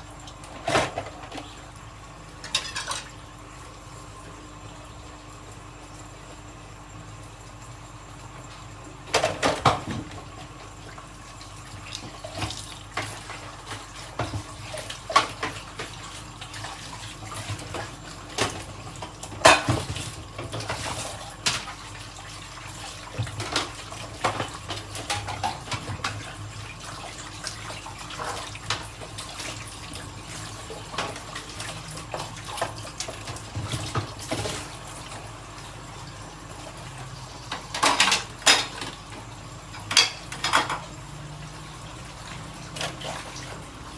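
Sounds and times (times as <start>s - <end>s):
tap water running: 0.0s - 43.9s.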